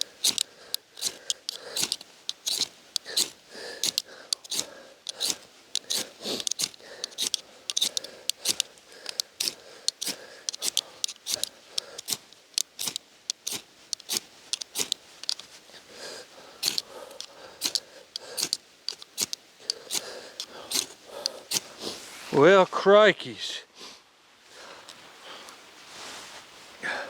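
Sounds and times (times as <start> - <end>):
striker scraping and clicking: 0.0 - 15.9, 16.6 - 21.8.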